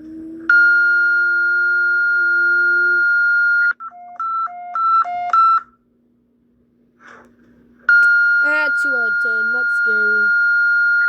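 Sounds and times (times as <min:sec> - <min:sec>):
long high alert beep: 0:00.5 - 0:04.4, 0:07.9 - 0:11.0
short alternating pitch beeps: 0:00.5 - 0:05.7, 0:07.9 - 0:11.0.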